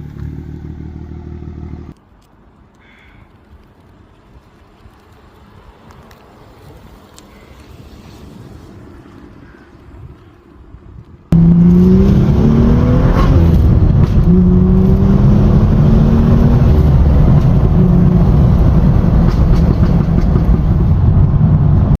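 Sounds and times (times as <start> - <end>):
car engine accelerating hard: 11.3 - 22.0.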